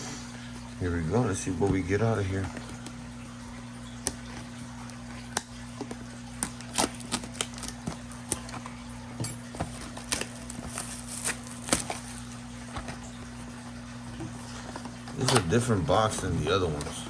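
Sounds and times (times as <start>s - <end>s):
packaging crackling and clicking: 3.9s - 13.6s.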